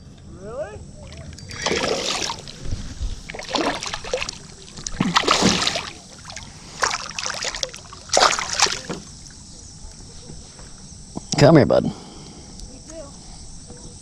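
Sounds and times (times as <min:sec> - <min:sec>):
fish splashing in water: 0:01.0 - 0:09.4.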